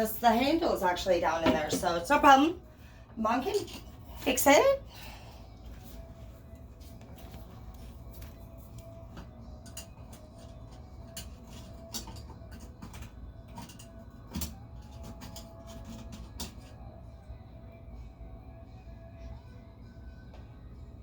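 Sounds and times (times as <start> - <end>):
low steady hum: 0.0 - 21.0
tools clicking and knocking: 9.6 - 16.7.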